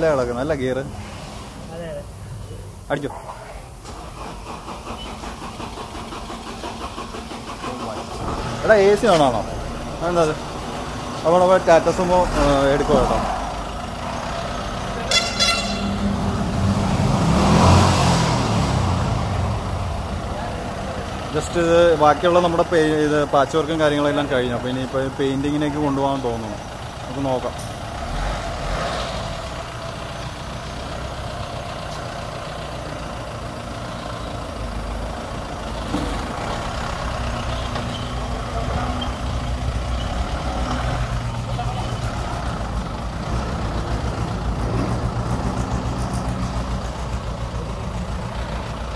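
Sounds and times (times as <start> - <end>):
diesel engine running: 0.0 - 48.9
vehicle horn toots: 15.0 - 16.4.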